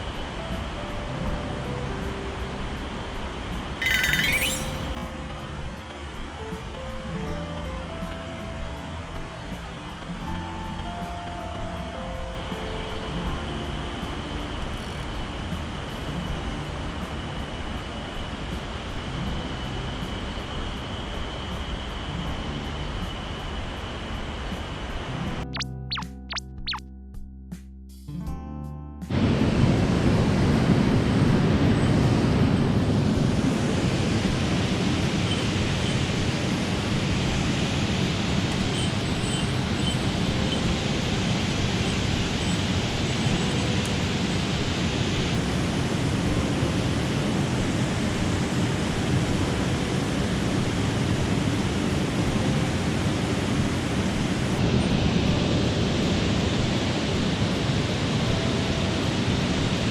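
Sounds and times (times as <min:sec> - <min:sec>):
mountain stream water rushing: 0:33.7 - 0:46.2.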